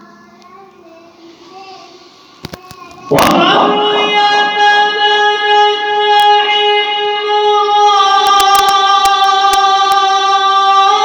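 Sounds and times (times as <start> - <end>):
person chanting recitation: 3.0 - 11.0
sharp clicks: 8.2 - 10.0.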